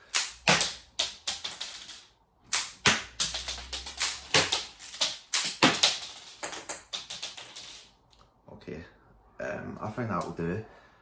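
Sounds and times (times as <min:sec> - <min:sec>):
plastic toy pieces clicking: 0:00.2 - 0:02.0, 0:02.6 - 0:07.9.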